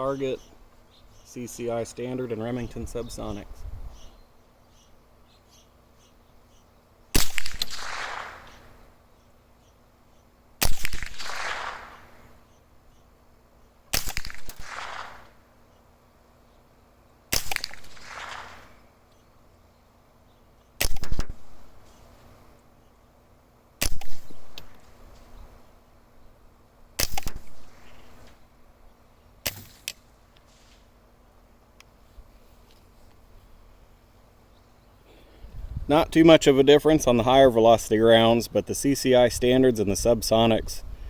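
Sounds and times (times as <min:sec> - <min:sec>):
suppressed rifle shots: 0:07.1 - 0:08.8, 0:10.6 - 0:12.3, 0:13.9 - 0:15.4, 0:17.3 - 0:18.8, 0:20.8 - 0:21.7, 0:23.8 - 0:24.9, 0:27.0 - 0:28.3.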